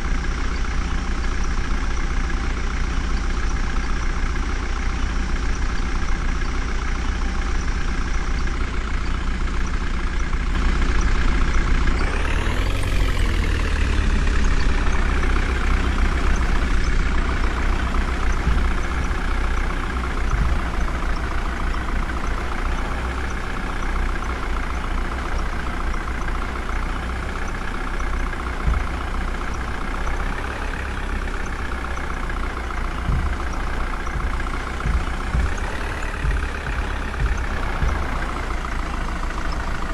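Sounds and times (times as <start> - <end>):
heavy diesel engine revving: 10.6 - 39.9.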